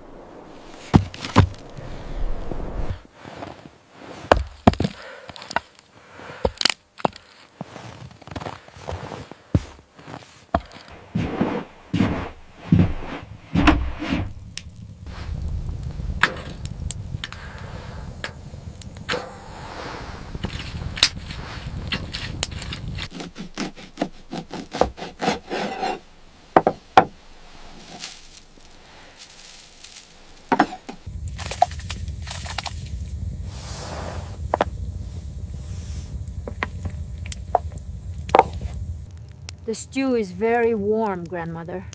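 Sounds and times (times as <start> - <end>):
low rumble: 0.0 - 3.1, 11.0 - 23.1, 27.2 - 41.9.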